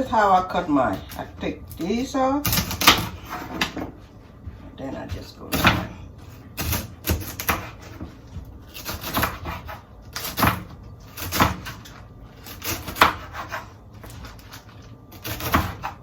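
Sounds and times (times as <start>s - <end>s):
knife chopping on cutting board: 2.4s - 3.9s, 5.1s - 6.0s, 6.6s - 14.6s, 15.2s - 16.0s.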